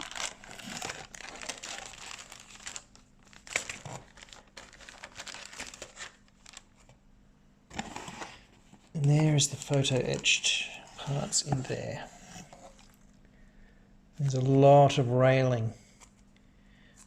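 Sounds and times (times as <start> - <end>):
plastic packaging crinkling: 0.0 - 6.9.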